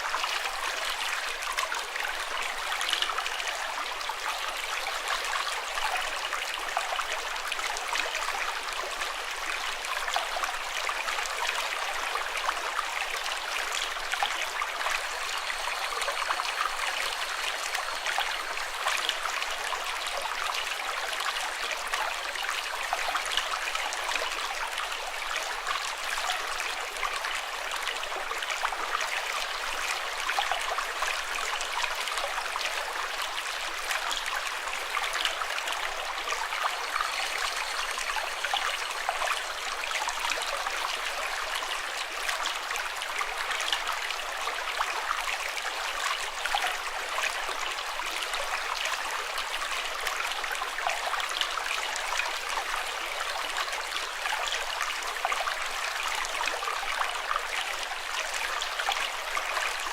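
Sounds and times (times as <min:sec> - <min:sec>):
stream water rushing: 0:11.7 - 0:21.9, 0:27.0 - 0:52.5.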